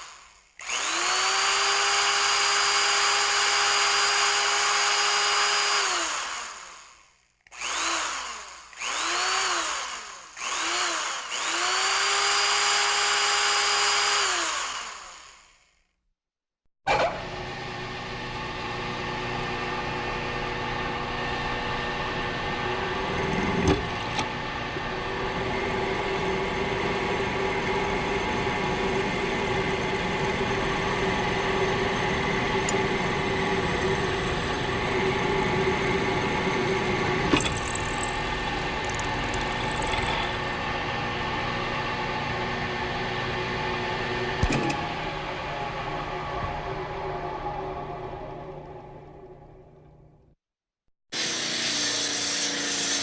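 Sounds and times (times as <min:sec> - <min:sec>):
power tool motor running: 0:00.0 - 0:15.6, 0:25.0 - 0:40.6.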